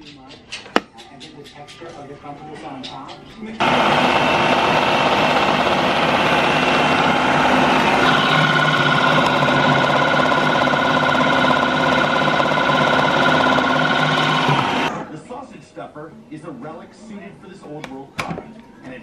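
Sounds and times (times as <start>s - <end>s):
blender motor running: 3.6s - 15.0s.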